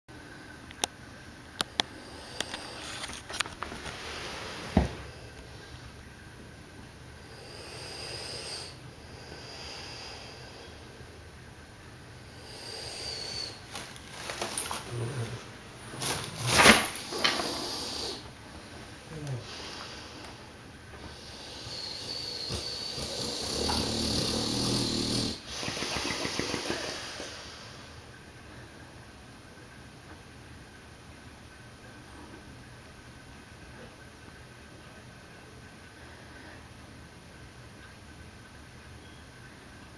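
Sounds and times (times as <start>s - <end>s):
dog snoring: 7.2s - 10.9s, 12.2s - 18.3s, 19.0s - 20.4s, 21.0s - 27.8s
dog snorting: 12.8s - 18.3s, 21.0s - 27.3s.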